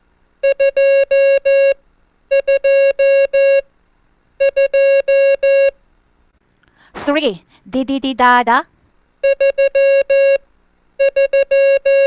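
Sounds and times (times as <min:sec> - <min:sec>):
morse code beeps: 0:09.2 - 0:10.4, 0:11.0 - 0:12.0.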